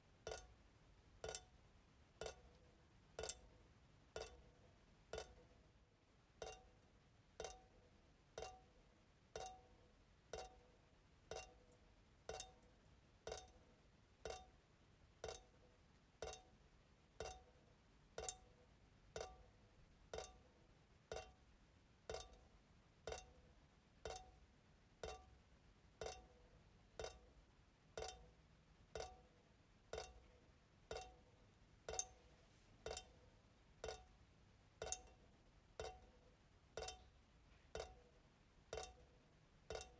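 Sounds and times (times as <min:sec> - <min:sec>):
faucet dripping into sink: 0:00.2 - 0:00.5, 0:01.2 - 0:01.5, 0:03.2 - 0:03.4, 0:04.2 - 0:04.5, 0:05.1 - 0:05.4, 0:06.4 - 0:06.7, 0:07.4 - 0:07.7, 0:09.4 - 0:09.7, 0:10.3 - 0:10.6, 0:11.3 - 0:11.7, 0:12.3 - 0:13.6, 0:14.2 - 0:14.6, 0:15.2 - 0:15.5, 0:17.2 - 0:17.5, 0:18.2 - 0:18.5, 0:20.1 - 0:20.4, 0:22.1 - 0:22.4, 0:24.0 - 0:24.3, 0:26.0 - 0:26.3, 0:28.0 - 0:28.2, 0:29.9 - 0:30.3, 0:30.9 - 0:31.2, 0:31.8 - 0:32.2, 0:32.8 - 0:33.1, 0:33.8 - 0:34.1, 0:34.8 - 0:35.2, 0:35.8 - 0:36.1, 0:36.8 - 0:37.1, 0:37.7 - 0:38.0, 0:38.7 - 0:39.0, 0:39.7 - 0:39.9.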